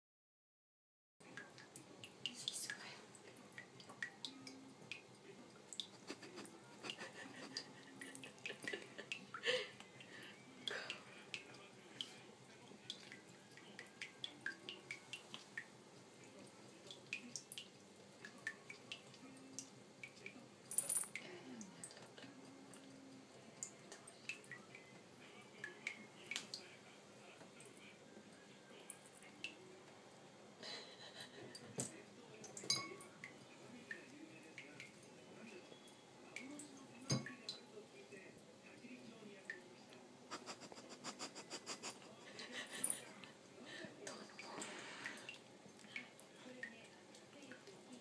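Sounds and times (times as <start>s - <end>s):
water splashes and drips: 1.3s - 24.9s, 25.6s - 26.7s.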